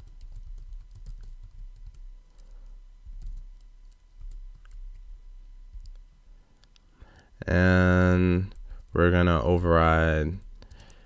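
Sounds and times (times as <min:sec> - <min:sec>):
keyboard typing: 0:00.0 - 0:05.1, 0:05.7 - 0:06.0, 0:10.4 - 0:11.0
low steady hum: 0:00.0 - 0:11.0.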